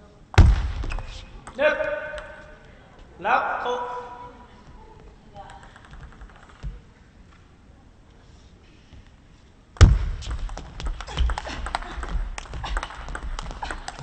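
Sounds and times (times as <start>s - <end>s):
loud thud: 0.4s - 1.0s, 9.8s - 10.5s
table tennis ball clicking: 5.4s - 6.7s, 10.3s - 14.0s.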